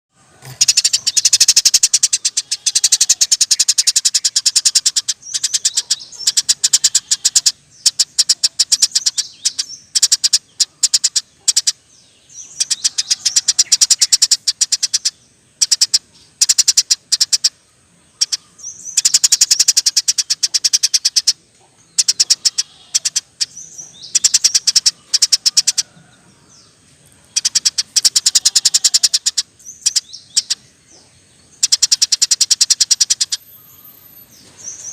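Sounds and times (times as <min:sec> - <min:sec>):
sparrow chirping: 0:00.4 - 0:34.9.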